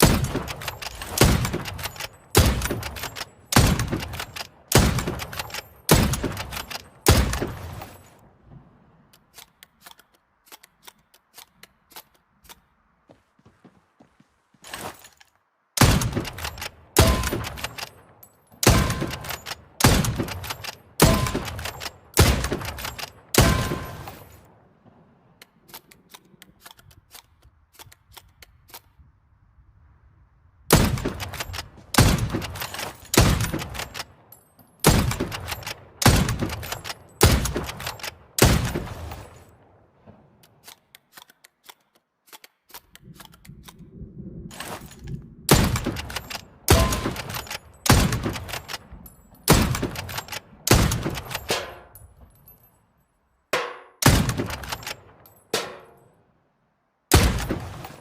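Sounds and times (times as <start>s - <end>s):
rifle shots: 0.0s - 8.1s, 15.8s - 25.0s, 30.7s - 40.7s, 44.5s - 52.0s, 53.6s - 56.0s, 57.1s - 58.0s.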